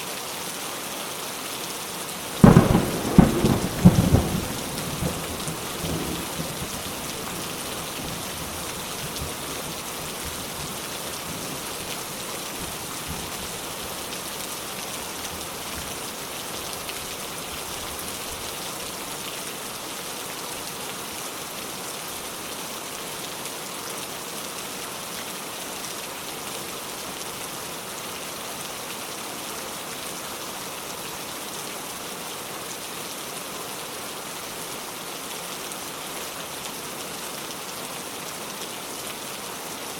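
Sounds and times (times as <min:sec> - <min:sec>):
steady rain falling: 0:00.0 - 0:39.9
thunder rumble: 0:02.4 - 0:09.4.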